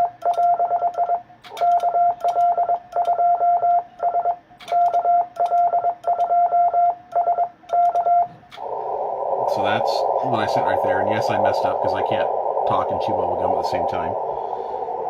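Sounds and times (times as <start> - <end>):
morse code beeping tone: 0.0 - 8.3
sharp clicks: 0.2 - 3.8, 4.6 - 6.4, 7.1 - 8.7.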